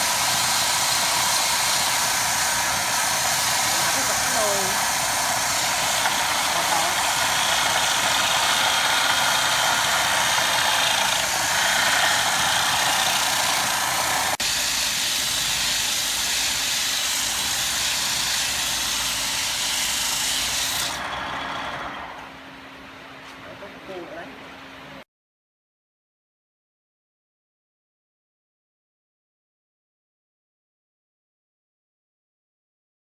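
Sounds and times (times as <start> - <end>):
wood cutting on a lathe: 0.0 - 22.3.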